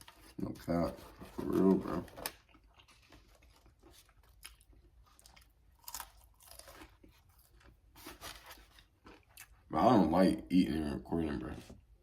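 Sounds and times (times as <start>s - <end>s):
chewing with soft crunches: 2.2s - 9.8s.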